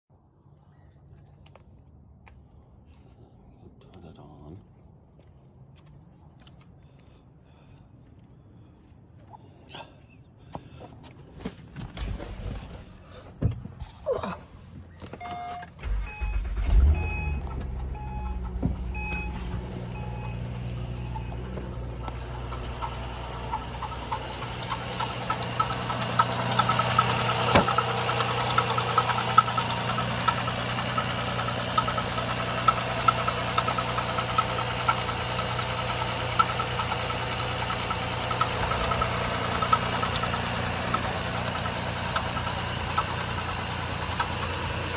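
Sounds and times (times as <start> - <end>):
beeping tone: 15.2 - 21.4
car engine starting and idling: 15.2 - 44.9
fast engine tapping: 15.8 - 44.9.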